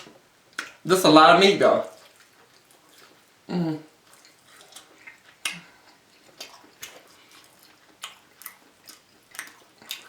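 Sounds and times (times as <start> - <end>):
wet chewing and lip smacks: 0.0 - 0.8, 1.9 - 3.3, 3.9 - 10.0
person humming: 3.5 - 3.8.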